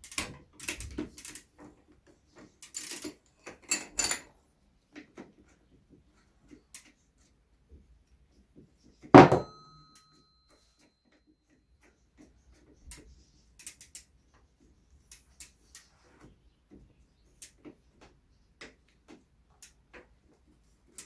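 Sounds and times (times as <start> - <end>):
loud metallic clank: 9.2 - 9.6.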